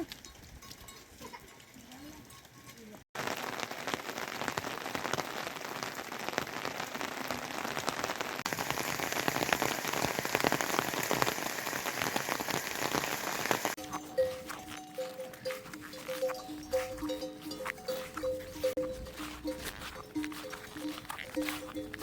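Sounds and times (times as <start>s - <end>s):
rain drops crackling on surface: 0.0s - 13.8s.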